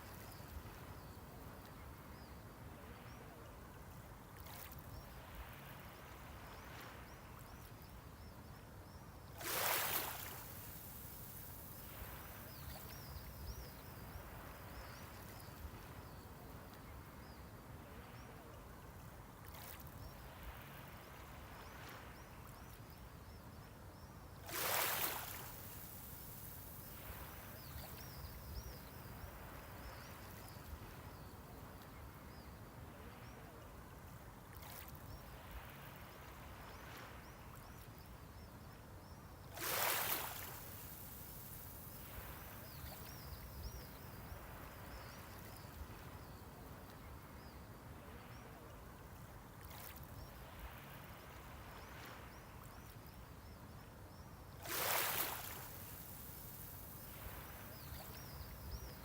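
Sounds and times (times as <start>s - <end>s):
small waves washing on shore: 9.3s - 22.5s, 24.4s - 38.0s, 39.4s - 53.2s, 54.5s - 59.0s
wave splashes: 9.4s - 13.6s, 24.4s - 31.1s, 39.5s - 46.2s, 54.6s - 59.0s.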